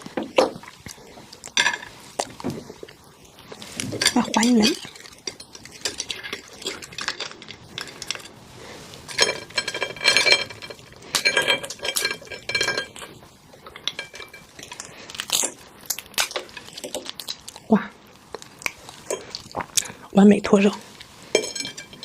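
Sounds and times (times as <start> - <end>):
cutlery clinking against dishes: 9.1 - 13.2, 13.8 - 14.8, 21.4 - 22.0.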